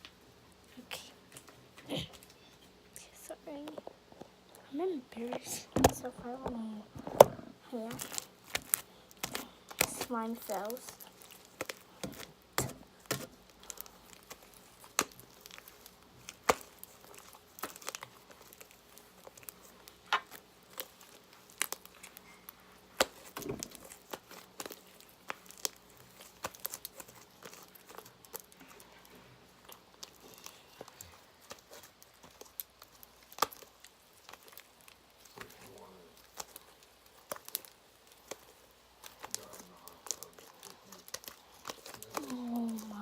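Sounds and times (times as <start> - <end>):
slime clicking and crackling: 4.5 - 43.0.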